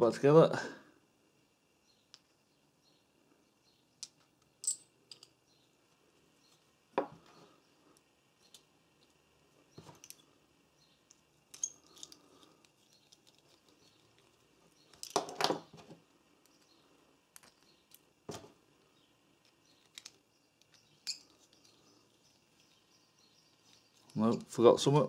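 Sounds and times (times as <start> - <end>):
small metal parts clicking: 4.0 - 5.4, 8.0 - 9.2, 10.0 - 10.3, 11.0 - 15.6, 16.4 - 18.1, 19.4 - 22.9.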